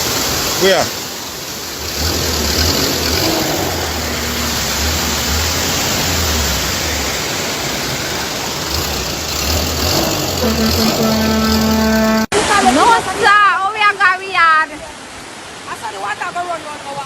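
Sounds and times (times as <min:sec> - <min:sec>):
floodwater rushing: 0:00.0 - 0:17.0
low rumble: 0:01.8 - 0:12.2.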